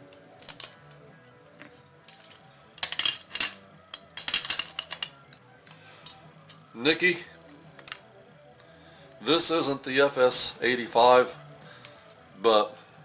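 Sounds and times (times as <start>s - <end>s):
metal engine parts clinking: 0.4s - 5.2s, 7.8s - 8.1s.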